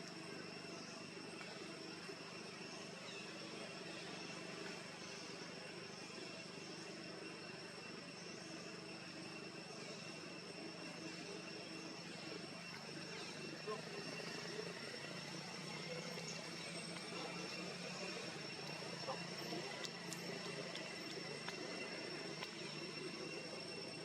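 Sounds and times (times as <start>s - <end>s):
constant high-pitched whine: 0.0s - 24.0s
faint chirps: 0.0s - 24.0s.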